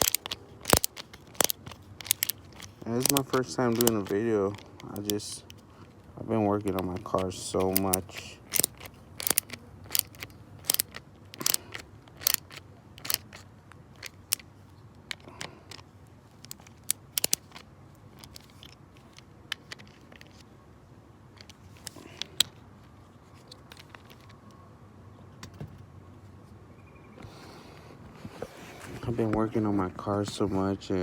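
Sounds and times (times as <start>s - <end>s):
sharp mechanical clicks: 0.0s - 20.4s.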